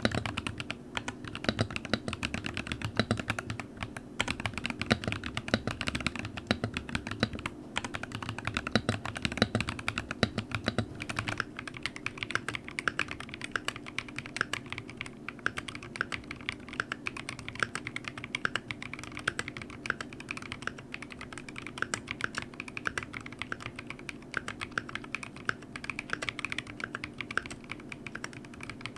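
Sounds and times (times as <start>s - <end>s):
steady low hum: 0.0s - 28.9s
typing on mechanical keyboard: 0.0s - 28.9s.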